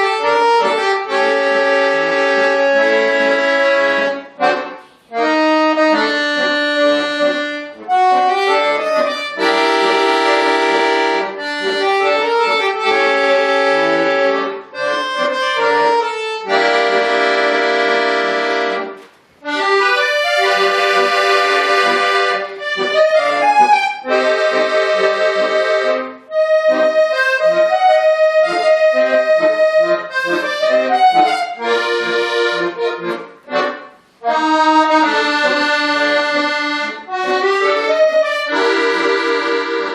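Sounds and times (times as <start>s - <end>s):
button accordion solo: 0.0s - 39.9s.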